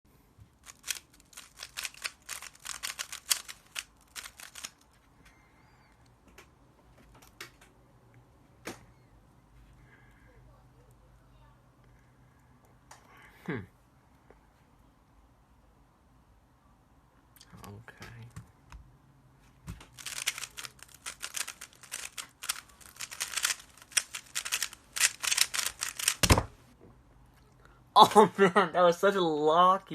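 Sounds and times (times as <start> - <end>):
puzzle cube plastic clicks: 0.5 - 6.1, 19.9 - 26.6.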